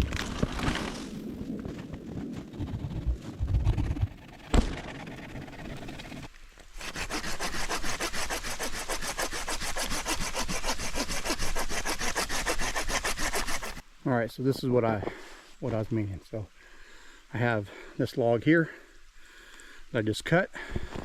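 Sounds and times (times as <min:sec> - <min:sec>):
hand saw cutting tree trunk: 0:06.8 - 0:13.8.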